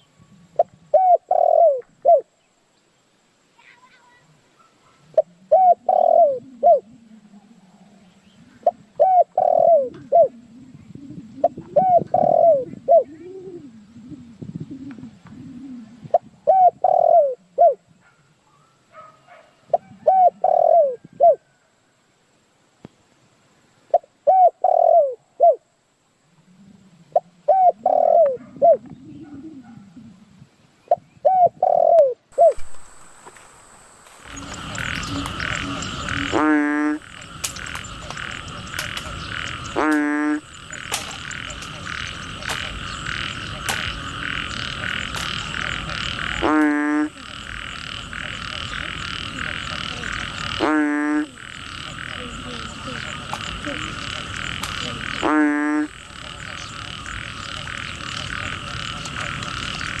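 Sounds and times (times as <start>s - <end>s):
frog chorus pulsing: 4.8s - 17.9s, 18.9s - 21.8s, 26.3s - 30.3s, 31.2s - 60.0s
loud frog croak: 5.1s - 17.8s, 19.7s - 21.6s, 26.3s - 30.2s, 33.8s - 60.0s.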